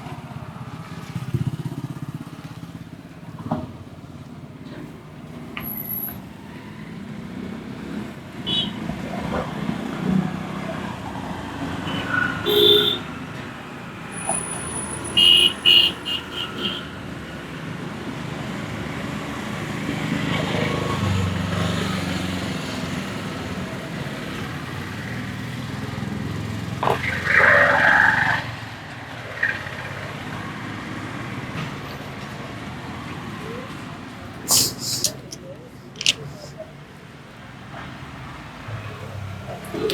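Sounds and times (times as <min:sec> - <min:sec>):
roadside traffic: 0:00.0 - 0:39.9
vehicle engine rumble: 0:33.0 - 0:39.9.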